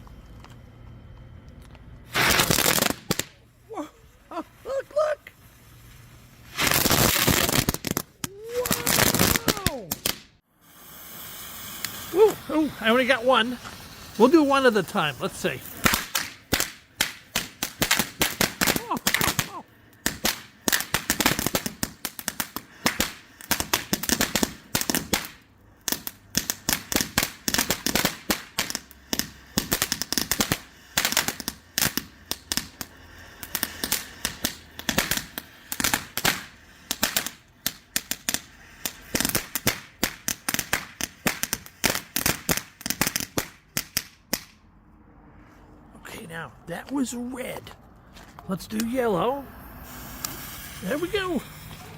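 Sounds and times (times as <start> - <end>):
crackling firework: 0.0 - 45.9, 46.7 - 51.9.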